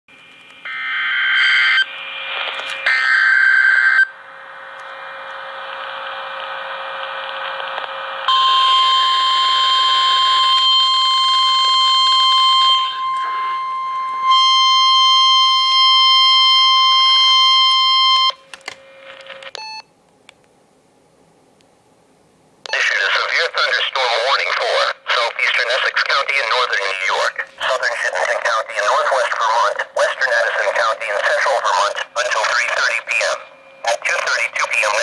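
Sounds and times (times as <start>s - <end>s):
weather radio alarm tone: 0.7s - 2.0s, 2.8s - 4.2s, 8.3s - 18.4s, 22.7s - 35.0s
radio static hiss: 1.5s - 3.2s, 4.0s - 8.3s, 12.9s - 13.6s, 22.7s - 35.0s.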